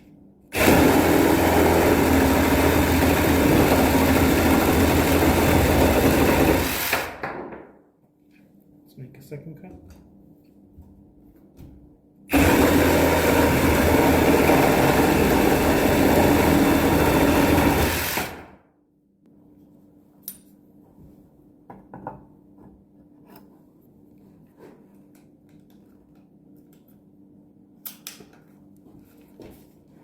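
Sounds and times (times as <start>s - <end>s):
reciprocating saw cutting wood: 0.6s - 7.1s, 12.3s - 18.5s.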